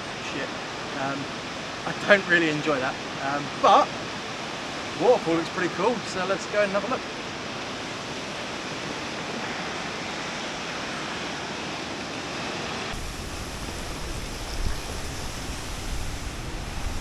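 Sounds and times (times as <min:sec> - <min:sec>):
waterfall roaring: 0:00.1 - 0:17.0
deep rumble: 0:13.0 - 0:17.0.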